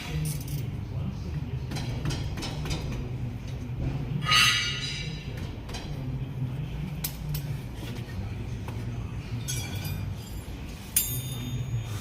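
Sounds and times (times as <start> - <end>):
metal tools clinking: 0.0 - 0.7, 9.4 - 12.0.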